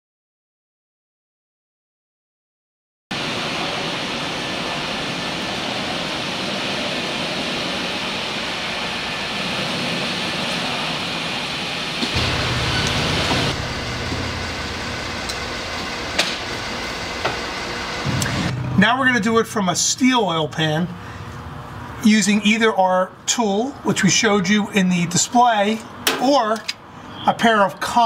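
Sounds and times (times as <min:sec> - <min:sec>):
machine noise with hiss: 0:03.1 - 0:19.2
low hum: 0:03.2 - 0:22.0.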